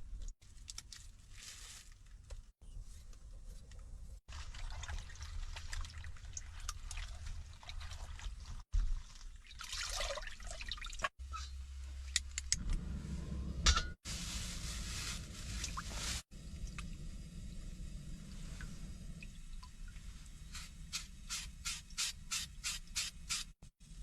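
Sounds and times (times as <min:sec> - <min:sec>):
water pouring and trickling: 0:04.3 - 0:11.2.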